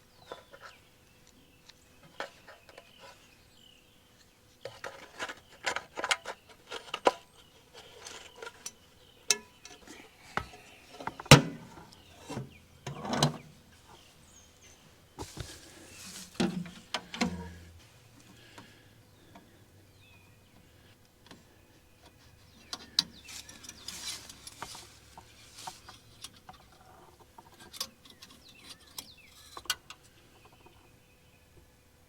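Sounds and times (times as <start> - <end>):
clicks taps and scrapes: 22.0 - 30.8
faint bird chirps: 28.0 - 31.6.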